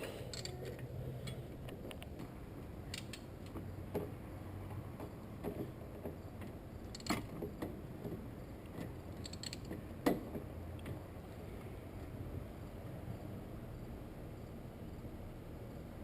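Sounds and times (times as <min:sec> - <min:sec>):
metallic tool clicks and clinks: 0:00.3 - 0:01.4, 0:02.9 - 0:03.5, 0:09.2 - 0:09.7.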